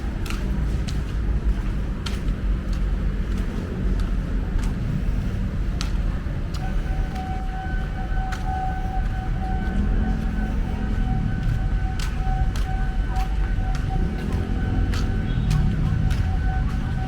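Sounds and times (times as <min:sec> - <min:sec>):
vehicle rumble: 0:00.0 - 0:17.0
high-pitched tone: 0:06.6 - 0:17.0.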